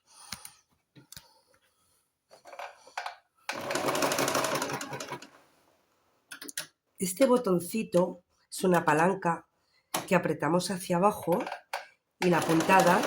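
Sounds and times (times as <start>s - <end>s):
sewing machine stitching: 3.5s - 5.4s, 11.3s - 13.0s.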